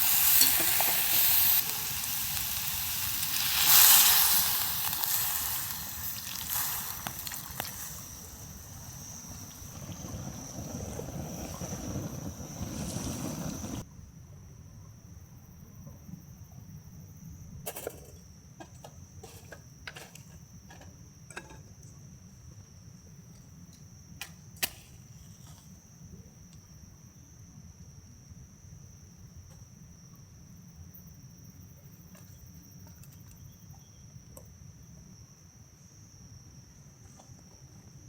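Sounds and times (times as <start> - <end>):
food sizzling and bubbling: 0.0 - 13.9
high insect trill: 0.0 - 38.0.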